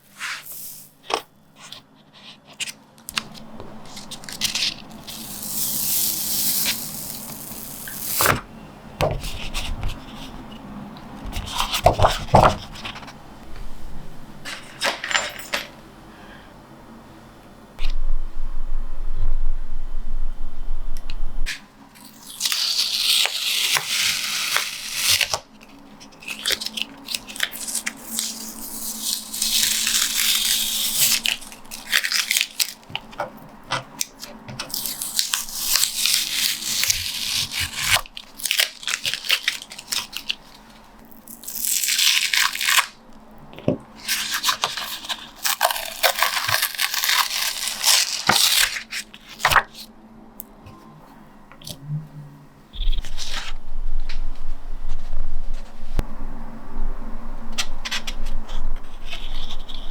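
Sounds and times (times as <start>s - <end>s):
paper rustling: 0.2s - 8.4s, 9.0s - 13.7s, 52.8s - 56.0s, 57.5s - 59.9s.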